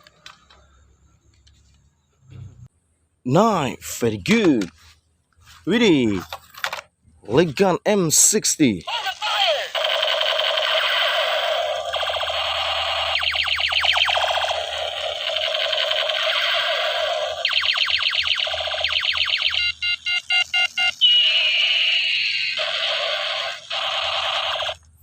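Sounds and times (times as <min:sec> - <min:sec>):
toy gun shooting effects: 0:08.9 - 0:24.9
falling electronic tone: 0:11.2 - 0:24.8.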